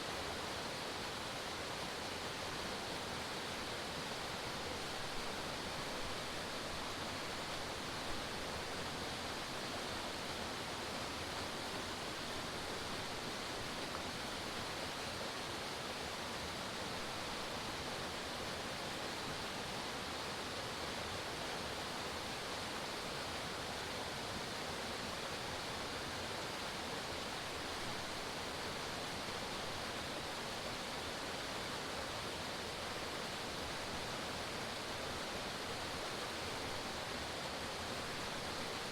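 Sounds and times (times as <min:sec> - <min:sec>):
waterfall pouring and splashing: 0:00.0 - 0:38.9.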